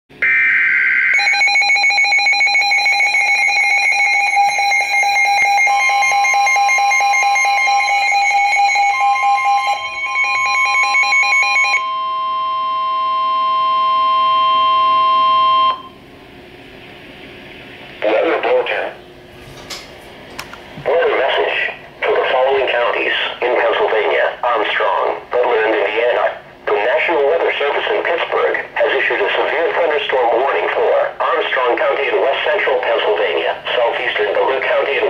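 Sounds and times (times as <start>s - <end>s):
steady warning alert tone: 0.2s - 16.0s.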